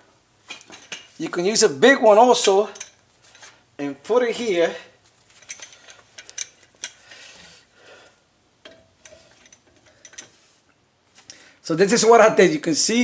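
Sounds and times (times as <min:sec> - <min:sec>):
metal clamp clicking and clinking: 0:02.7 - 0:03.4, 0:05.4 - 0:07.0, 0:08.6 - 0:10.4.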